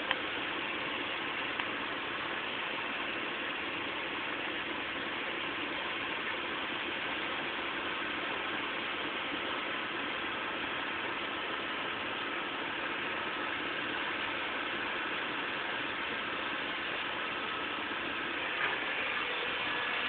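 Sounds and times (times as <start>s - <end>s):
heavy diesel engine running: 0.0s - 20.0s.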